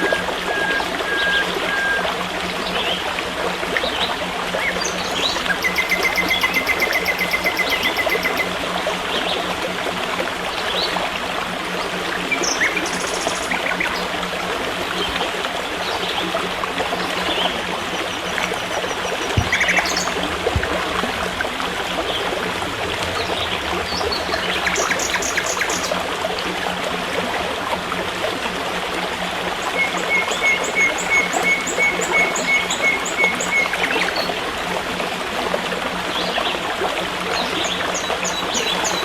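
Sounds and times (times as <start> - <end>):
stream flowing: 0.0 - 39.0
birds chirping: 4.8 - 8.6, 18.0 - 20.7, 23.2 - 26.0, 38.0 - 39.0.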